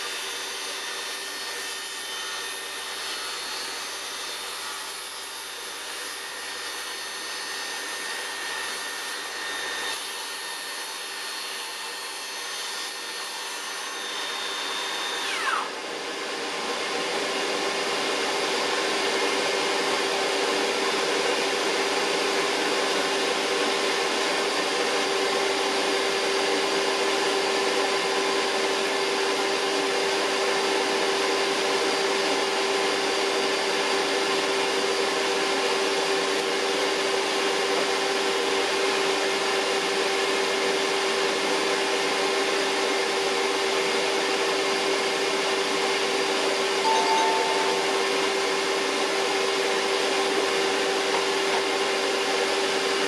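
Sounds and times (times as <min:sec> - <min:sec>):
electric motor whining: 0:14.6 - 0:15.8.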